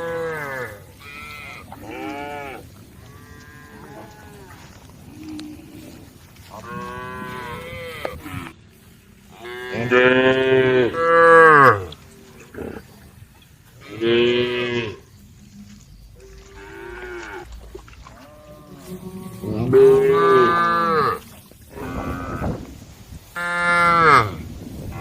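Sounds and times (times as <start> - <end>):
cattle mooing: 0.0 - 8.5, 9.3 - 12.8, 16.2 - 22.7.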